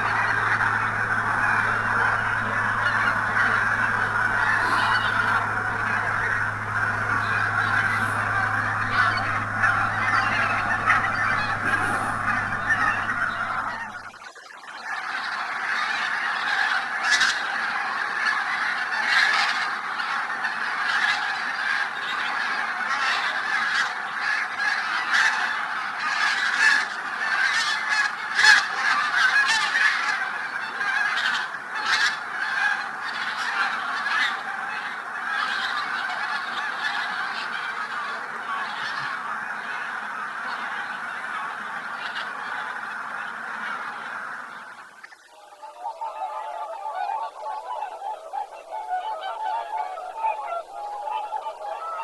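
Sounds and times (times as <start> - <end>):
flock of geese honking: 0.0 - 52.0.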